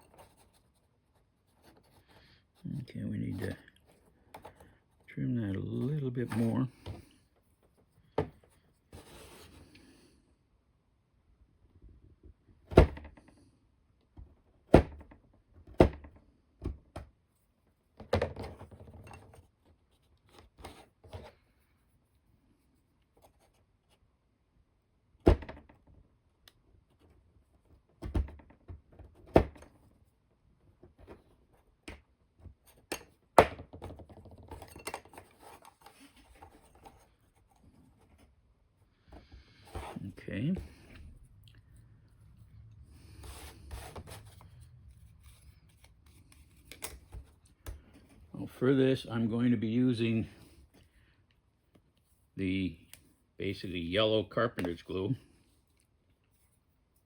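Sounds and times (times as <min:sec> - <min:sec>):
light scraping and rustling: 0:39.1 - 0:48.7.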